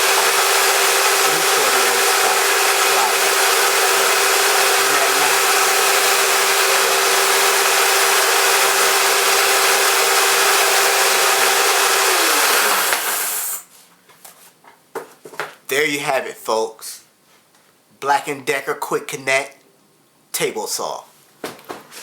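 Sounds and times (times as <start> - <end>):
circular saw running: 0.0 - 13.6.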